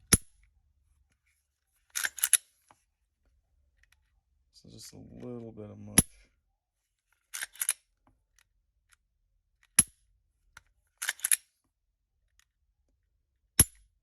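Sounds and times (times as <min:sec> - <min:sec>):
pistol slide rattle: 0:01.9 - 0:02.5, 0:07.3 - 0:07.9, 0:10.9 - 0:11.5.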